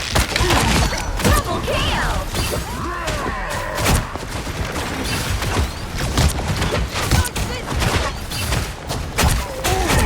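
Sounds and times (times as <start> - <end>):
video game gunfire: 0.0 - 10.0.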